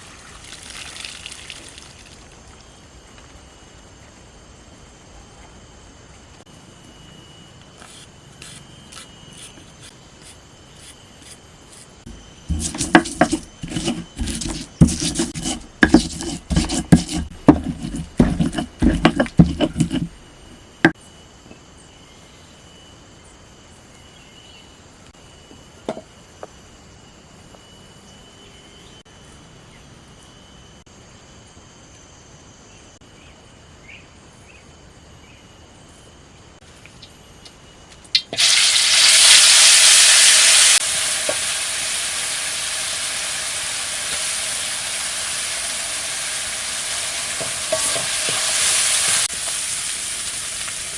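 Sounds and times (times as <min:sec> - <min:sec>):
knocks and scraping on wood: 0:12.1 - 0:20.2.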